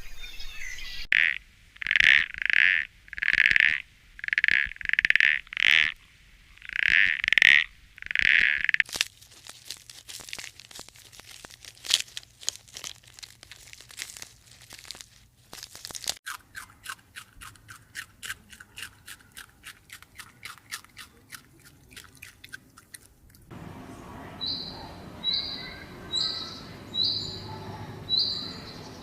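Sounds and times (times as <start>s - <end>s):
crisp crunching: 8.8s - 23.5s.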